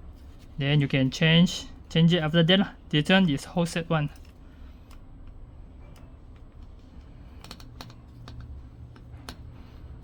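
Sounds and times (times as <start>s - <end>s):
low steady hum: 0.0s - 10.0s
small plastic parts clicking: 7.3s - 9.5s.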